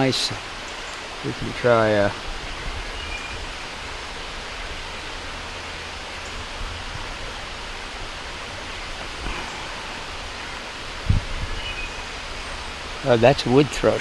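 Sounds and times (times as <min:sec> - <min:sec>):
outdoor rushing hiss: 0:00.0 - 0:14.0.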